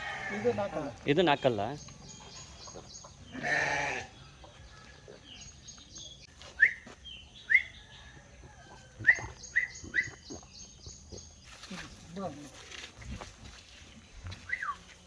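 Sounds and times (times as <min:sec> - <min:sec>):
bird chirping: 0:00.3 - 0:12.1.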